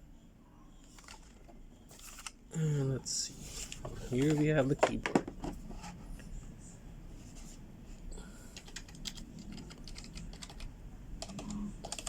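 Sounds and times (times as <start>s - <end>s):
keyboard keys tapping: 8.6s - 12.0s.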